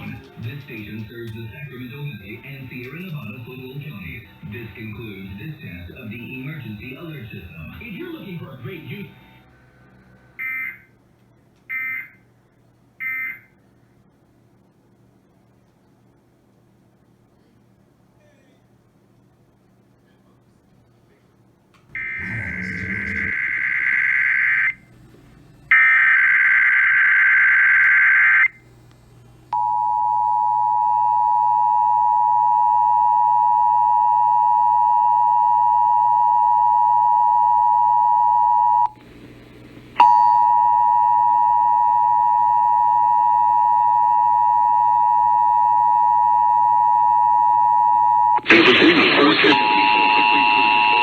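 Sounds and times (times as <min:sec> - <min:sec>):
screeching digital data bursts: 0:48.4 - 0:51.0
two-tone attention signal: 0:49.4 - 0:51.0.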